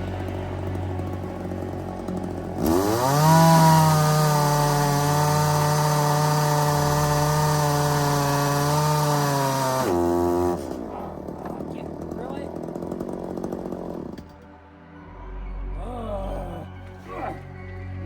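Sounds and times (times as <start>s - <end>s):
chainsaw revving to full throttle: 0.0s - 14.3s.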